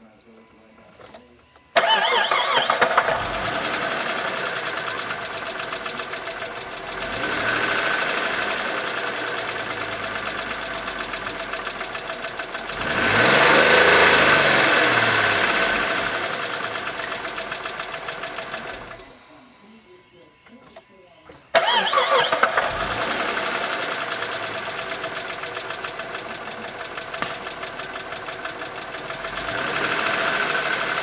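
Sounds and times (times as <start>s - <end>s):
car engine with rod knock: 27.0s - 27.9s.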